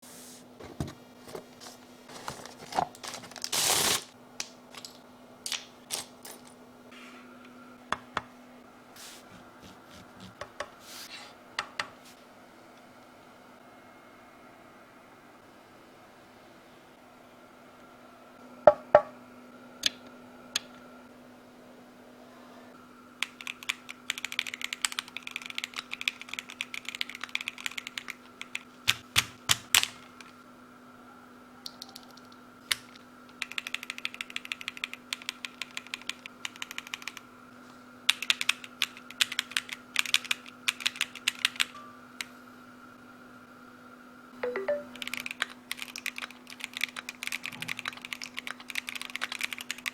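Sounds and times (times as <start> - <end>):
faint steady hum: 0.0 - 49.9
mechanical keyboard typing: 23.2 - 30.3, 31.7 - 37.2, 38.1 - 41.7, 44.4 - 49.9.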